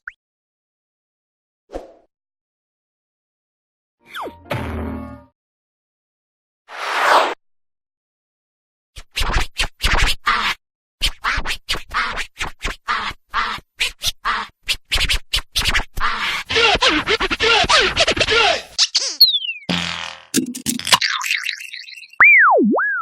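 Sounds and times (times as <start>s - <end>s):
record scratching: 16.0s - 21.2s.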